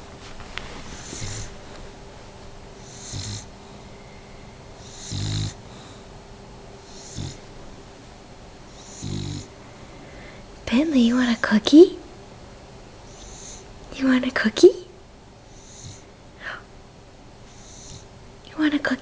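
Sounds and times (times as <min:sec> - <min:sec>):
pet snoring: 0:00.8 - 0:01.6, 0:02.8 - 0:03.6, 0:04.8 - 0:06.0, 0:06.8 - 0:07.5, 0:08.7 - 0:09.6, 0:13.0 - 0:13.7, 0:15.5 - 0:16.1, 0:17.5 - 0:18.1.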